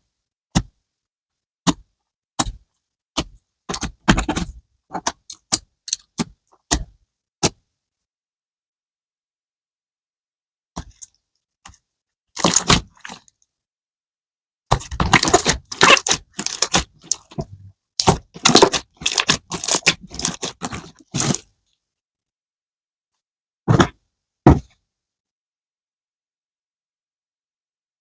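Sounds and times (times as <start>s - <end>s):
slime crunching under hand: 15.0s - 17.4s, 18.0s - 21.5s.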